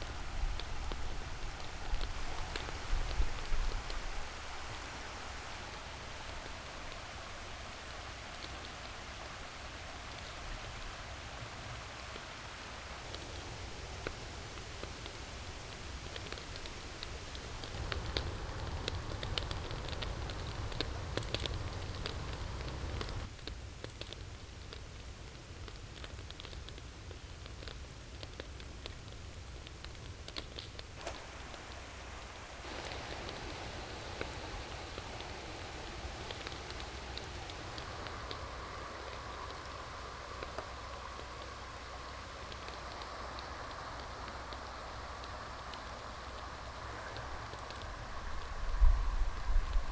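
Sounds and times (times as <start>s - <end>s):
stream water rushing: 0.0s - 19.4s, 31.0s - 49.9s
wood fire crackling and popping: 0.0s - 49.9s
faint steady tone: 31.0s - 49.9s.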